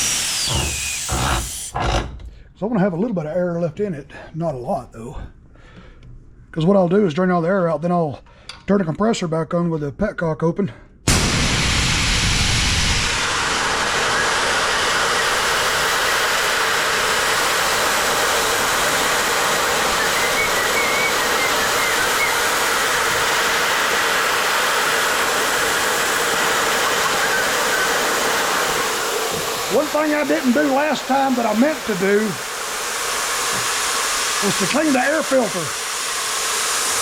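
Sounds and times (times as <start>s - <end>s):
compressed air hissing from valve: 0.0s - 1.8s, 11.1s - 37.0s.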